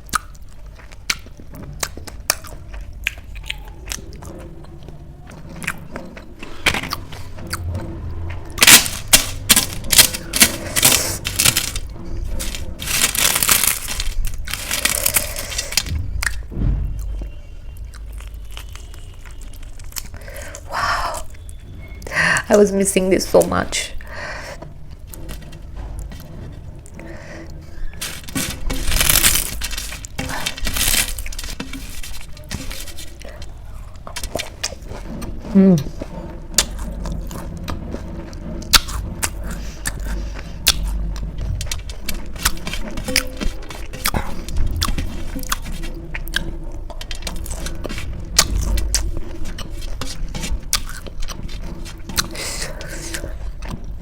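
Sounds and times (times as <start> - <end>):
chewing: 0.0 - 21.6, 24.6 - 54.0
crunching bites: 8.6 - 16.4.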